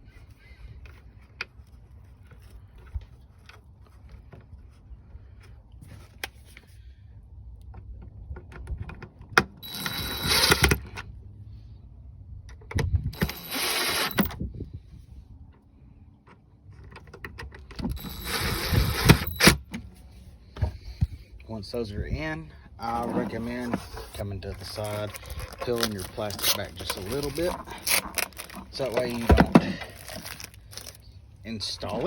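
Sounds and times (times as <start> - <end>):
power drill driving screws: 9.6 - 10.8, 13.2 - 14.3, 17.9 - 19.6
handling clicks and knocks: 22.8 - 31.1.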